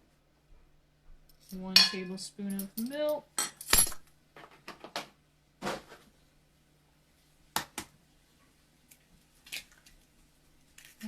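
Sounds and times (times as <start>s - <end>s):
utensils tapping on bowls: 1.5s - 3.6s.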